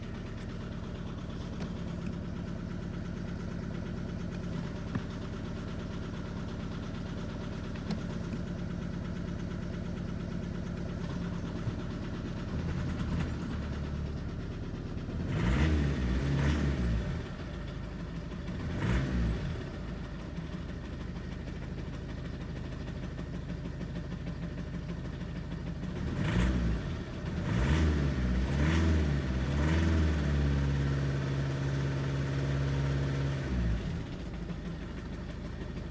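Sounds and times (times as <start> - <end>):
car engine idling rough and misfiring: 0.0 - 35.9
engine revving from throttle blips: 15.1 - 17.6, 18.5 - 20.0, 25.9 - 34.2.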